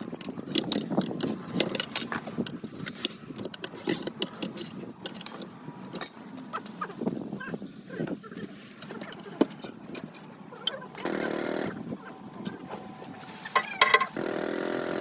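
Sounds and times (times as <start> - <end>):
metal hand tools clinking: 2.8 - 3.2, 3.8 - 6.4.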